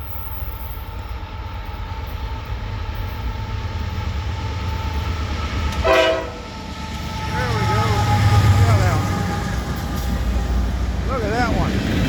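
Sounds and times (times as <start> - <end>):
diesel locomotives rumbling: 0.0 - 12.0
train horn blast: 5.7 - 10.6.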